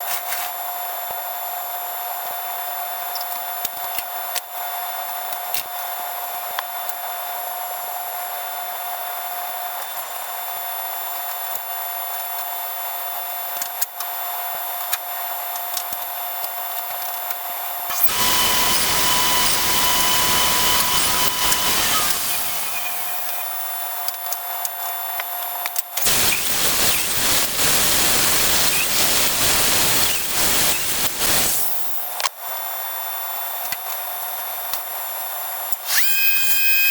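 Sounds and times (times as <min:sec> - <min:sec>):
steady whine over hiss: 0:26.1 - 0:32.1.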